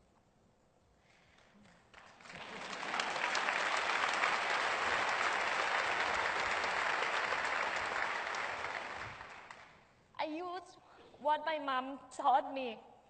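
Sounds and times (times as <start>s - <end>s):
audience applauding: 1.9s - 9.8s.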